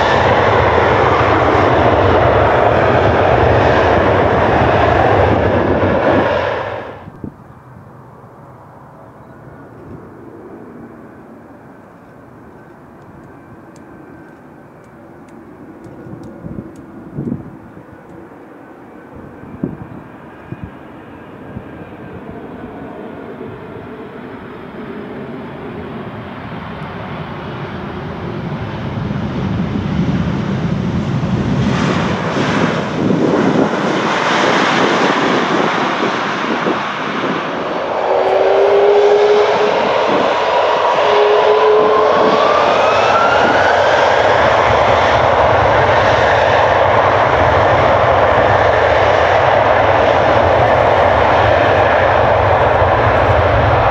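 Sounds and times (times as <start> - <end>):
aircraft engine noise: 0.0 - 53.9
rising engine whine: 0.0 - 53.9.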